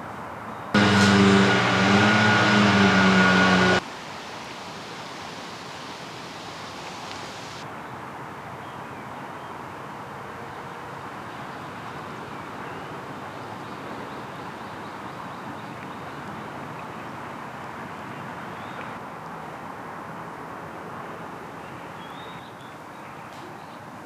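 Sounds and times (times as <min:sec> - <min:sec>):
rushing outdoor noise: 0:00.8 - 0:07.6.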